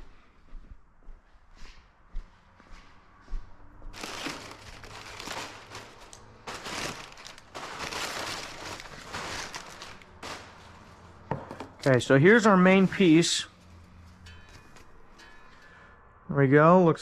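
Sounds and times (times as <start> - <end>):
packing material crinkling: 3.9 - 11.2.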